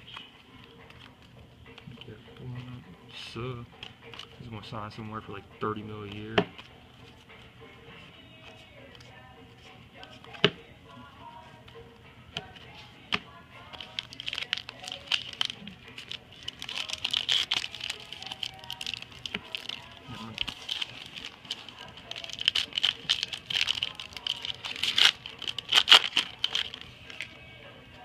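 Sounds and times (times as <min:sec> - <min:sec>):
cards clicking and rustling: 0:00.0 - 0:02.8, 0:13.7 - 0:27.4
foil wrapper crinkling and tearing: 0:13.8 - 0:27.3.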